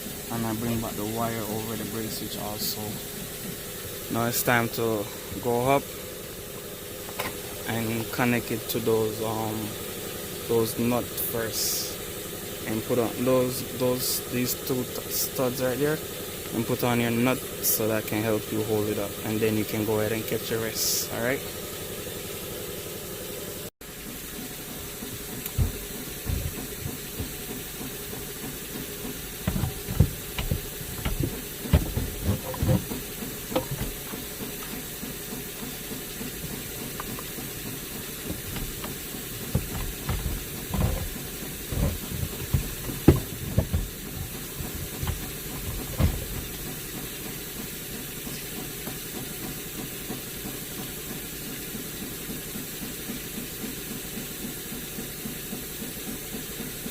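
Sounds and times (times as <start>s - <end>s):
steady hiss: 0.0s - 22.1s, 23.3s - 56.9s
steering column knocking and clunking: 24.4s - 50.9s.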